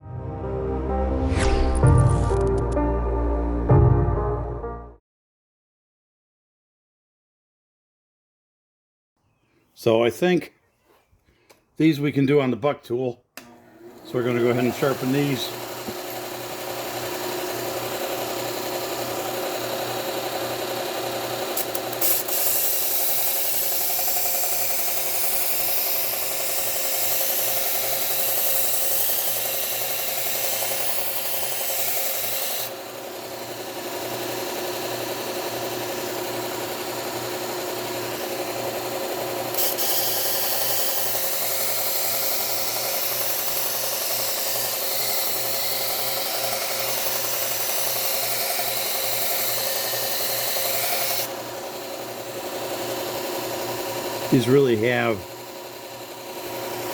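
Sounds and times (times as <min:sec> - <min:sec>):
belt sander motor hum: 0:13.4 - 0:56.9
blade grinding on belt: 0:13.4 - 0:56.9.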